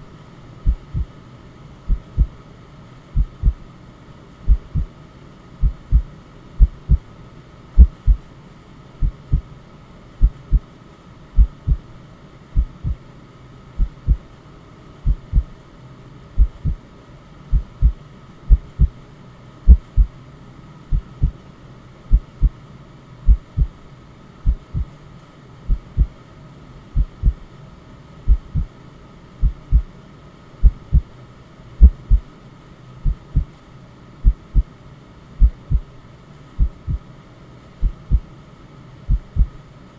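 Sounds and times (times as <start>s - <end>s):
white noise hiss: 0.0s - 39.9s
heartbeat lub-dub: 0.6s - 1.2s, 1.9s - 2.4s, 3.2s - 3.6s, 4.5s - 4.9s, 5.6s - 7.0s, 7.8s - 8.2s, 9.0s - 9.5s, 10.2s - 10.7s, 11.4s - 11.8s, 12.6s - 13.0s, 13.8s - 14.2s, 15.0s - 15.5s, 16.4s - 16.8s, 17.5s - 19.0s, 19.7s - 20.1s, 20.9s - 21.4s, 22.1s - 22.6s, 23.3s - 23.8s, 24.4s - 25.0s, 25.7s - 26.2s, 27.0s - 27.4s, 28.3s - 28.7s, 29.4s - 29.9s, 30.6s - 31.1s, 31.8s - 32.3s, 33.0s - 33.5s, 34.2s - 34.7s, 35.4s - 35.9s, 36.6s - 37.0s, 37.8s - 38.3s, 39.1s - 39.6s.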